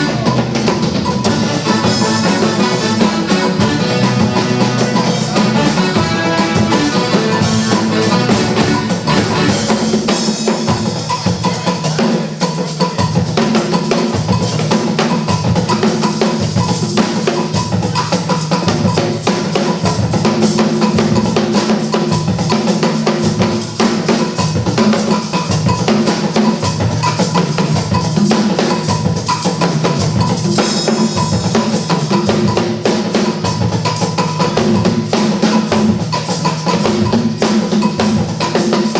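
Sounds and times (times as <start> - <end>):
drum kit fast beat: 0.0 - 38.9.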